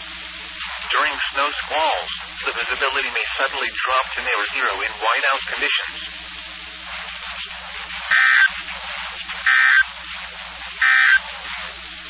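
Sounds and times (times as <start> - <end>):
low hum: 0.0 - 12.0
radio hiss: 0.0 - 12.0
digital data tones: 7.0 - 11.7.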